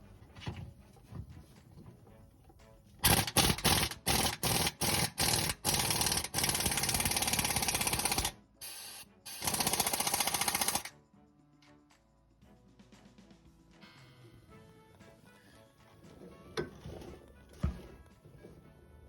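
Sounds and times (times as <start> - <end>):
impact wrench hammering: 3.0 - 8.3, 9.3 - 10.9.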